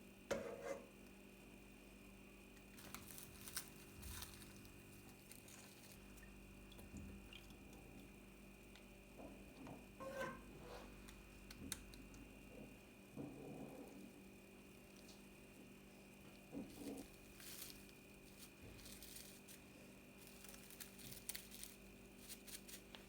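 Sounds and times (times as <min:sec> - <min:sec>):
faint hum: 0:00.0 - 0:23.0.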